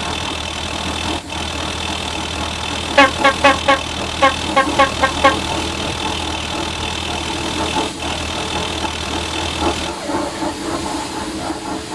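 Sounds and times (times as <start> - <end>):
chugging pulses: 0.0 - 11.9
engine idling: 0.0 - 11.9.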